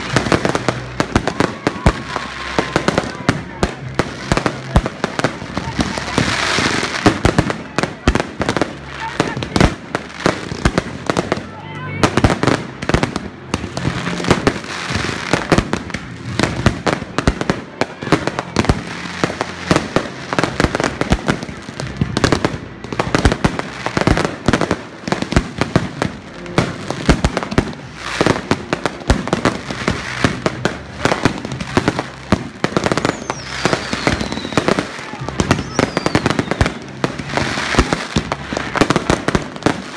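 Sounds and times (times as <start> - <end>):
fireworks bangs and crackles: 0.0 - 39.9
falling firework whistle: 33.0 - 36.8.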